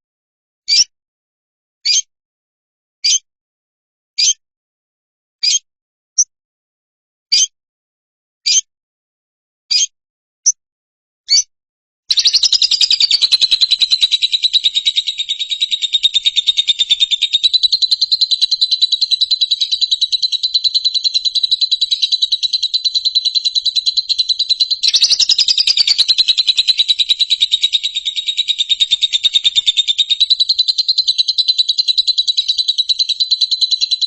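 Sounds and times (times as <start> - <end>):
bird chirps: 0.7 - 0.9, 1.9 - 2.1, 5.4 - 5.6, 9.7 - 9.9, 11.3 - 11.5, 12.1 - 34.0
rapid high bird trill: 12.1 - 34.0.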